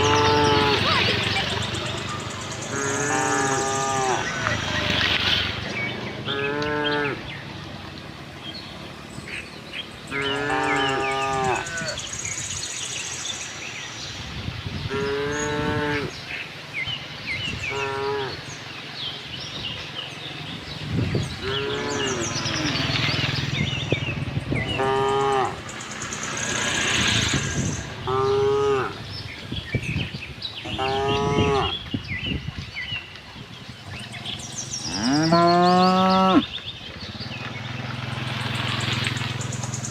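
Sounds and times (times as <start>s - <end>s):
small birds chirping: 0.0s - 39.9s
cattle mooing: 2.7s - 4.7s, 6.3s - 7.2s, 10.1s - 12.0s, 21.4s - 23.3s, 24.7s - 25.6s, 28.0s - 29.0s, 34.9s - 36.5s.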